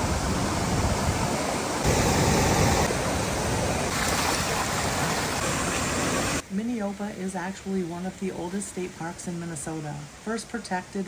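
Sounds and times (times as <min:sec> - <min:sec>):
waterfall rushing: 0:00.0 - 0:06.4.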